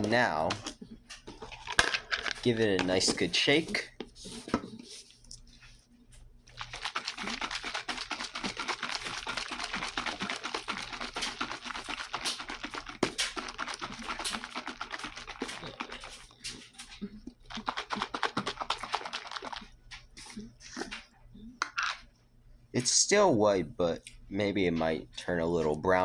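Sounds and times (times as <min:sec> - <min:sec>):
jar of cream shaken by hand: 0:00.0 - 0:04.6, 0:06.6 - 0:16.9, 0:17.5 - 0:19.8.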